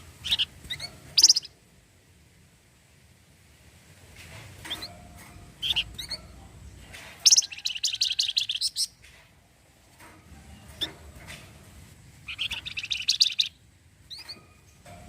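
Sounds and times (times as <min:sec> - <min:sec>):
bird chattering trill: 0:00.2 - 0:01.5, 0:05.6 - 0:06.3, 0:07.2 - 0:09.0, 0:12.2 - 0:14.4
bird chirping: 0:00.2 - 0:01.6, 0:04.6 - 0:09.0, 0:12.1 - 0:15.0.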